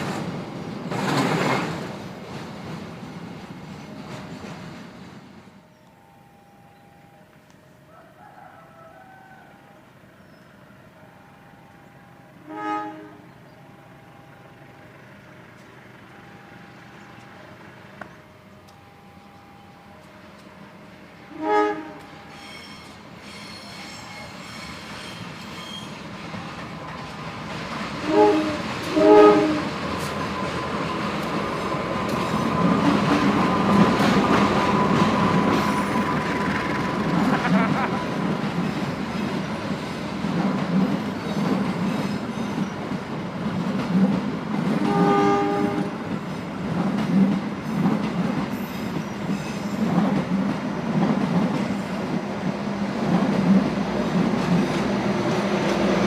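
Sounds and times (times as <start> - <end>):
rumble of rail traffic: 0.0 - 56.0
locomotive horn toot: 12.2 - 13.4, 21.2 - 26.0, 28.0 - 29.8, 44.8 - 46.1.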